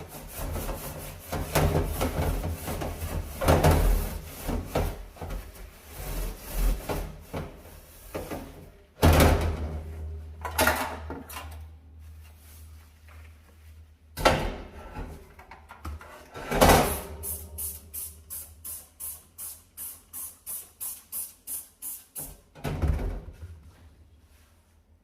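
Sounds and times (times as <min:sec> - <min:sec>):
brush scrubbing: 0:00.0 - 0:04.8.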